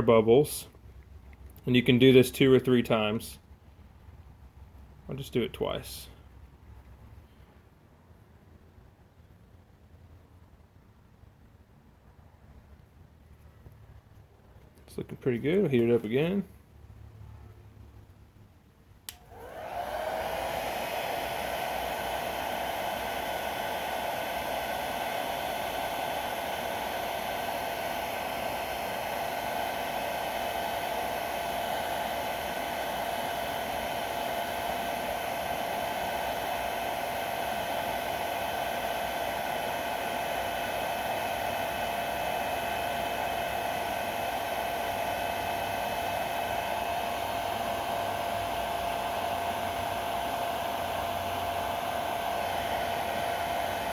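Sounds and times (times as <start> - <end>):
hair dryer blowing: 19.1 - 53.9.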